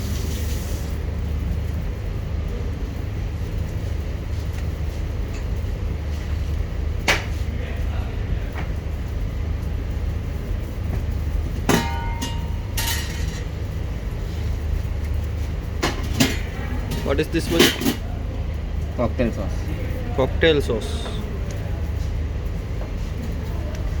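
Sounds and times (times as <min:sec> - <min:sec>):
steady low rumble: 0:00.9 - 0:24.0
metallic clang ringing: 0:11.7 - 0:13.5.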